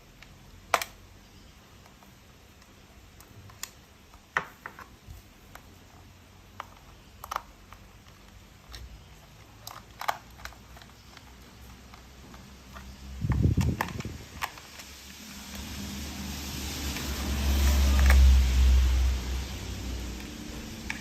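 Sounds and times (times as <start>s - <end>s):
plastic toy parts clicking: 0.2s - 1.0s, 1.8s - 4.9s, 6.5s - 15.7s.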